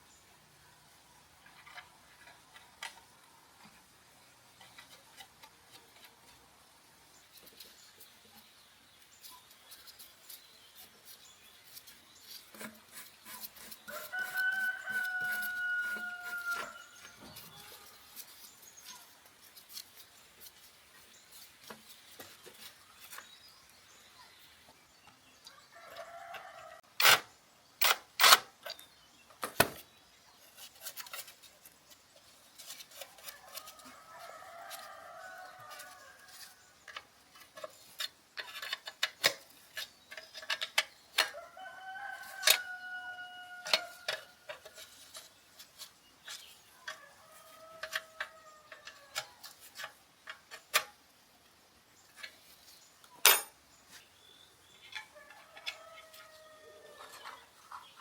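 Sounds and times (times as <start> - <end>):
rooster crowing: 13.9 - 17.9, 41.4 - 44.3, 55.1 - 57.2.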